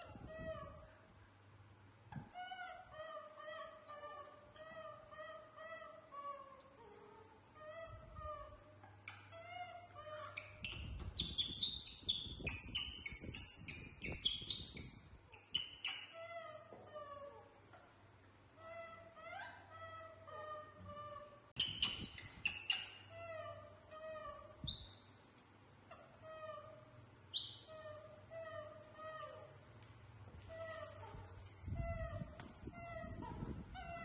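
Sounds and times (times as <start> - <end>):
high chirps and squeals: 2.8 - 5.4, 6.6 - 8.5, 9.2 - 16.7, 21.6 - 29.5, 30.4 - 34.0
young animals crying: 30.5 - 34.0.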